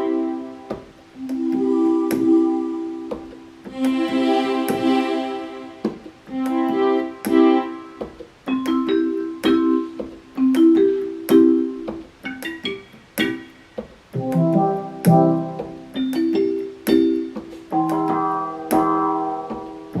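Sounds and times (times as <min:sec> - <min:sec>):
keyboard chord ringing: 0:00.0 - 0:05.8.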